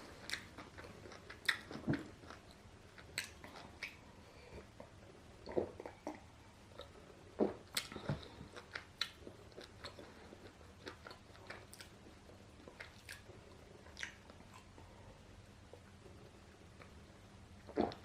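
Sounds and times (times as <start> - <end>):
person chewing crunchy food: 0.1 - 4.1, 5.4 - 14.7.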